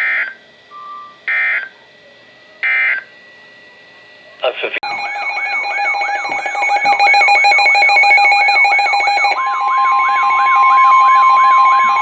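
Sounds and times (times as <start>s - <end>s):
steady warning tone: 0.0s - 12.0s
electronic siren sweeping upward: 4.8s - 12.0s
steady beeping tones: 4.8s - 12.0s.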